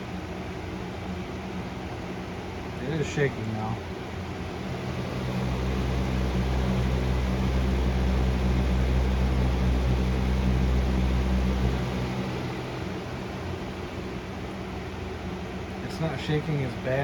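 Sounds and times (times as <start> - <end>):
box fan running: 0.0 - 17.0
low rumble of fan shaking: 0.0 - 17.0.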